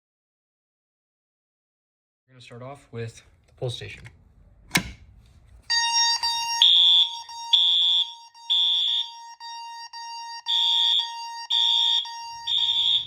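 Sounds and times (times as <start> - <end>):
fire alarm horns pulsing: 5.6 - 13.0
continuous steady alarm tone: 5.7 - 13.0.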